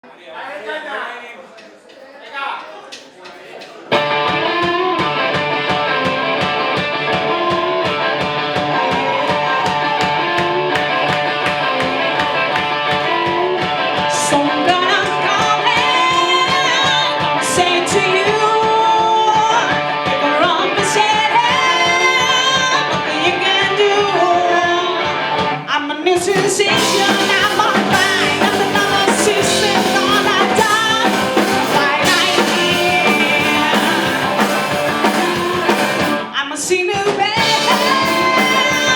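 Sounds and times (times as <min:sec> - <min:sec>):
steady drum beat: 0:02.9 - 0:23.9, 0:26.2 - 0:36.4, 0:37.0 - 0:38.9
electric guitar: 0:03.9 - 0:38.9
rock band playing: 0:03.9 - 0:38.9.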